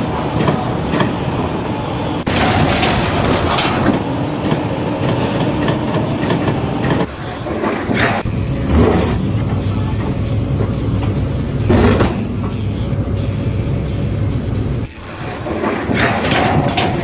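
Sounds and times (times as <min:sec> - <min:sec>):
low mechanical rumble with knocks: 0:02.2 - 0:04.6, 0:08.0 - 0:17.0.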